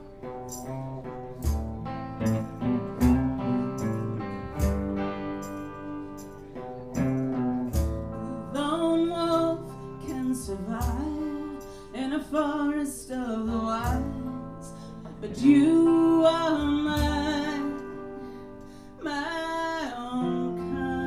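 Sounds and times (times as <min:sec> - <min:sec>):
acoustic guitar strumming: 0:00.0 - 0:21.0
person singing: 0:08.4 - 0:18.2, 0:19.0 - 0:21.0.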